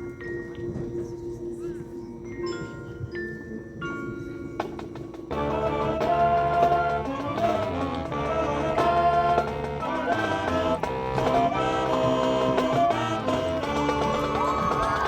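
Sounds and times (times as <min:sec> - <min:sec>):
marching band playing chords: 0:04.6 - 0:15.0.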